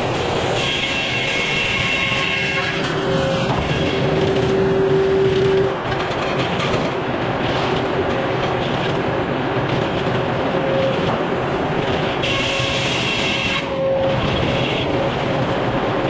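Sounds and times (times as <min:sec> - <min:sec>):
sawmill machinery running: 0:00.0 - 0:09.6.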